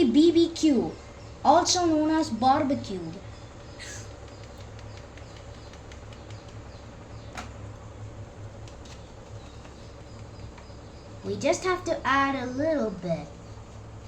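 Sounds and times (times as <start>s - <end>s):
steady low hum: 0.0s - 14.0s
small ticks: 3.1s - 7.6s.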